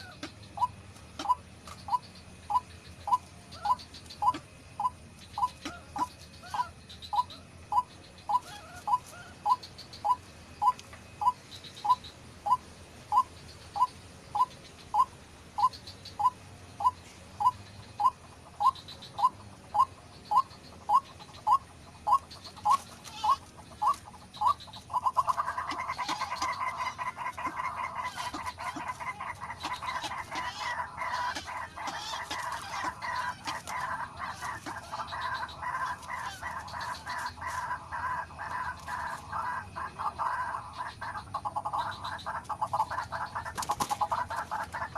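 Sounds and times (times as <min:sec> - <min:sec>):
bird clucking calls: 0:00.0 - 0:44.9
harsh bird chattering chorus: 0:00.0 - 0:44.9.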